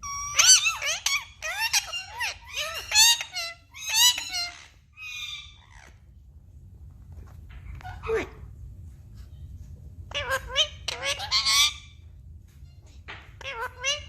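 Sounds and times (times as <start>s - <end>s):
parrot squeaky calls: 0.0s - 6.0s, 7.7s - 8.5s, 10.1s - 12.0s, 12.6s - 14.0s.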